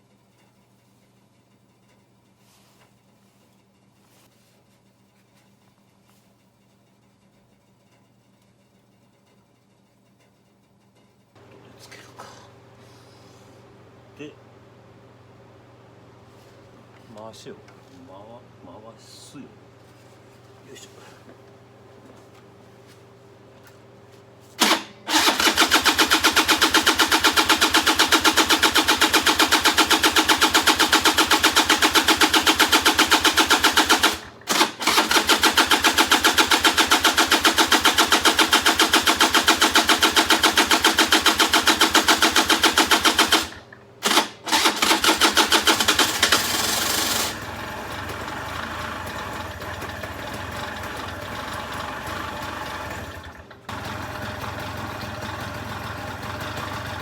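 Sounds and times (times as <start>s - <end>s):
two-stroke scooter engine running: 24.6s - 57.0s.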